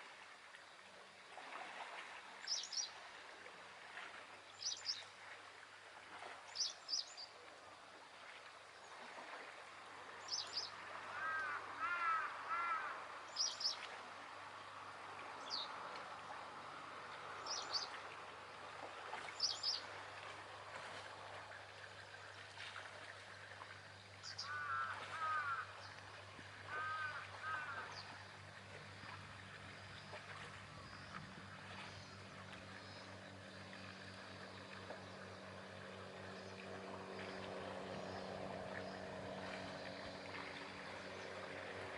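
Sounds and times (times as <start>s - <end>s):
low steady hum: 0.0s - 41.9s
birds chirping: 10.3s - 13.8s, 19.4s - 19.9s.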